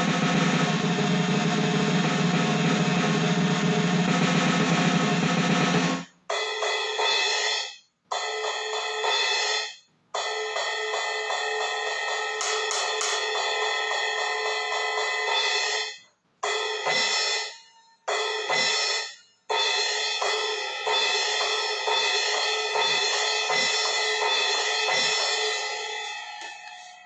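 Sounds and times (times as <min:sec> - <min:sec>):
electronic crash cymbal: 0:18.2 - 0:26.8.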